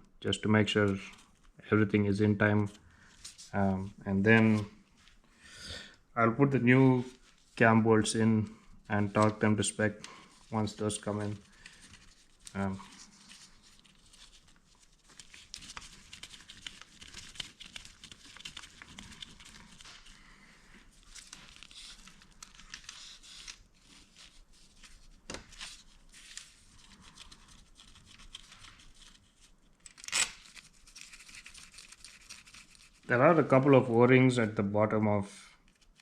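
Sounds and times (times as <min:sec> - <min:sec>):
scratchy rustling and crinkling: 0:06.8 - 0:34.0.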